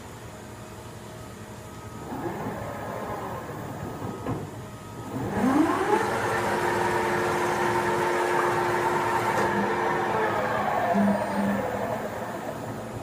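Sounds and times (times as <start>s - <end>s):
machine hum: 0.0s - 13.0s
lathe spindle whine: 1.8s - 13.0s.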